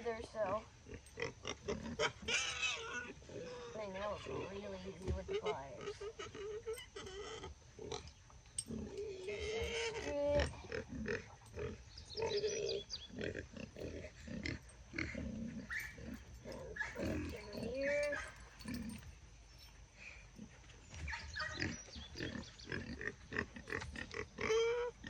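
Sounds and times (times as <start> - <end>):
puppies whining and grunting: 15.1 - 19.1, 20.4 - 22.2.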